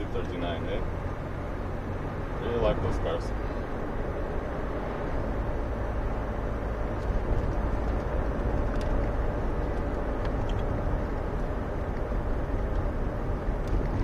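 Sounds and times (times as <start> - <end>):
car engine and road rumble: 0.0 - 14.0
faint clicks from car: 6.9 - 11.2.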